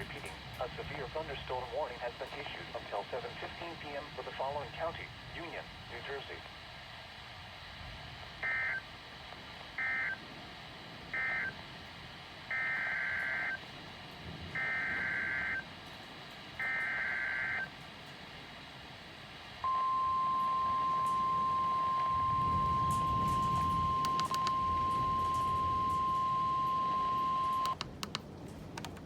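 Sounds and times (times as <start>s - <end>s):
steady warning alarm tone: 8.3s - 10.4s, 11.0s - 18.0s, 19.6s - 27.8s.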